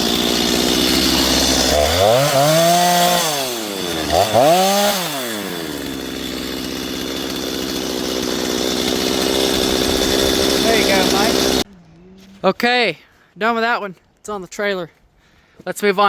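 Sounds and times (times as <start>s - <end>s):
chainsaw idling and revving: 0.0s - 11.7s.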